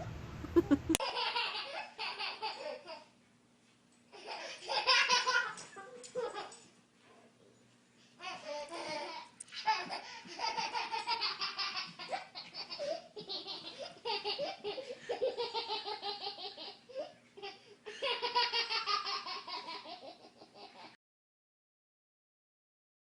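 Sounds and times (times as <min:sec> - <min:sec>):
baby laughing: 0:00.5 - 0:03.1, 0:04.1 - 0:06.7, 0:08.2 - 0:21.0.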